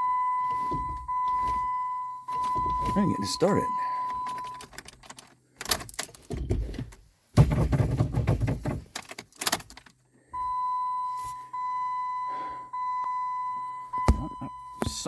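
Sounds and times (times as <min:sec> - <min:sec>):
car electronic warning chime: 0:00.0 - 0:04.7, 0:10.3 - 0:15.0
car clunks and knocks: 0:00.6 - 0:03.3, 0:06.2 - 0:09.0.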